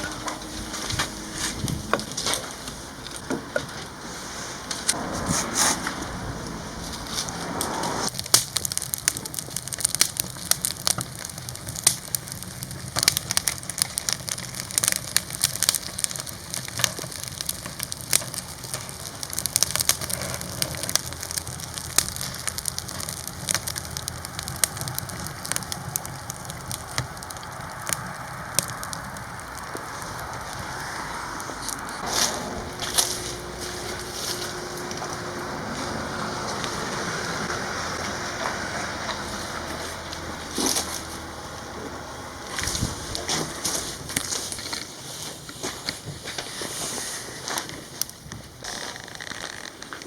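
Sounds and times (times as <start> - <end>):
low steady rumble: 0.0 - 8.2, 17.4 - 44.7
firewood crackling and popping: 0.0 - 50.0.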